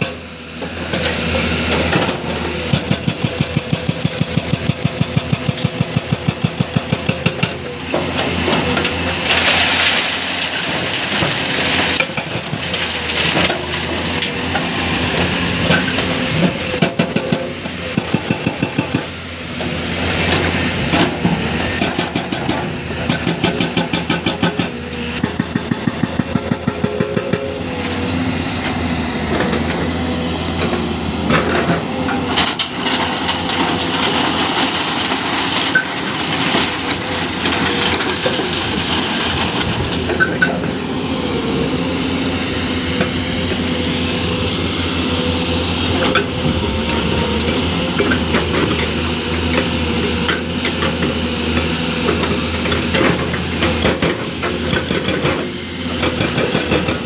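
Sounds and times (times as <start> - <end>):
hydraulic breaker hammering rock: 0.0 - 9.4, 10.8 - 27.8, 45.8 - 57.0
diesel engine running: 0.0 - 57.0.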